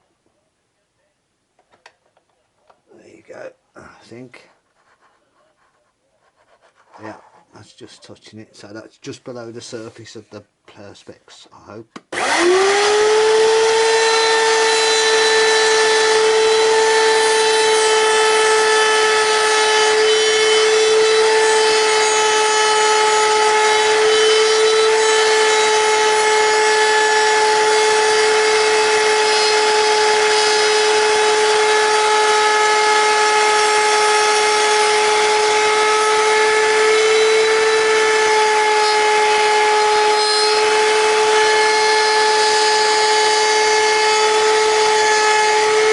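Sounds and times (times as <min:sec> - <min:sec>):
router bit cutting wood: 0:12.0 - 0:45.9
router motor whining: 0:12.1 - 0:45.9.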